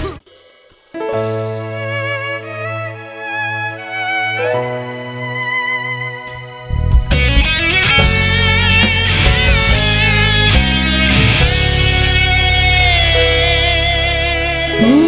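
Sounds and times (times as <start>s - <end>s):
electric guitar lead melody: 1.0s - 15.0s
soft string passage: 6.4s - 8.4s
rock band playing loudly: 7.0s - 15.0s.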